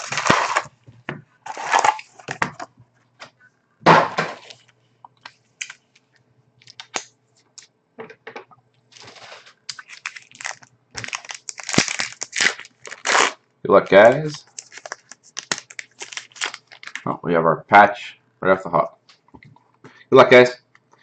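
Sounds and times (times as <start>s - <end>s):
wrapping and cardboard crinkling: 0.0s - 0.8s, 1.4s - 2.5s, 8.9s - 17.1s.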